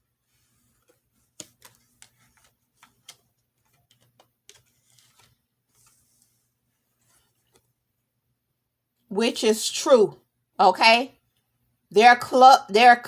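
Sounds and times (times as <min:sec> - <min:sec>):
soft brushing sounds: 0:00.0 - 0:07.8
faint light clicks and taps: 0:00.7 - 0:06.3.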